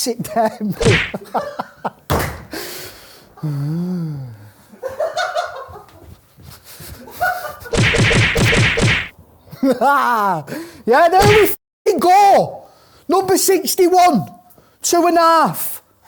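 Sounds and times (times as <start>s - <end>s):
men laughing rapidly: 0.4s - 2.0s.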